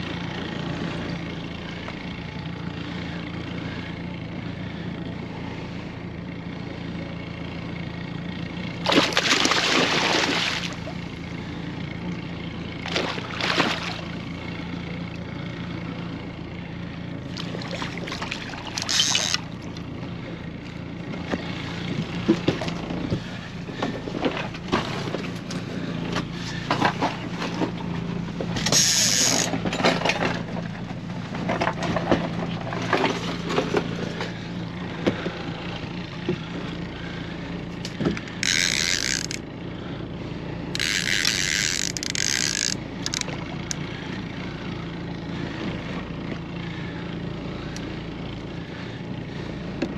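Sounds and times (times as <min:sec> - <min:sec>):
boat motor humming: 0:00.0 - 0:49.9
water splashing: 0:08.9 - 0:10.9, 0:12.9 - 0:14.1.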